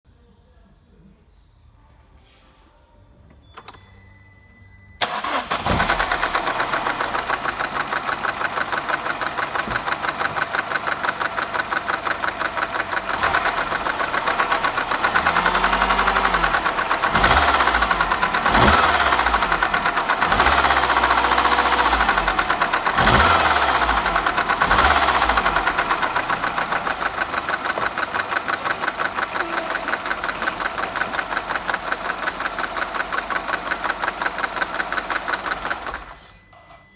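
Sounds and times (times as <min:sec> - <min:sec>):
rattling car engine revving: 0:05.0 - 0:36.4
car engine starting: 0:05.0 - 0:36.5.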